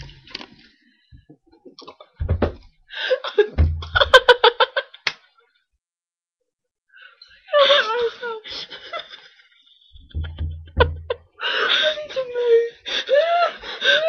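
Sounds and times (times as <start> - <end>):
girl laughing: 3.4 - 4.8.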